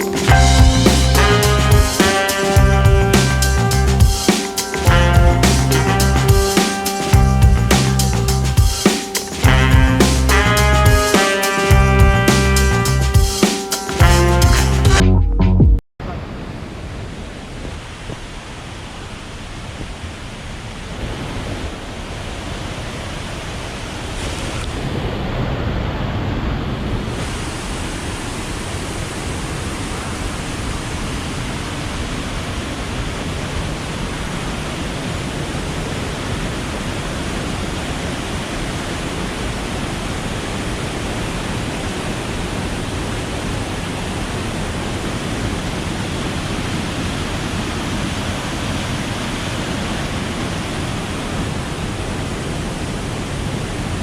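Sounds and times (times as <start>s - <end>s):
waterfall roaring: 16.2s - 54.0s.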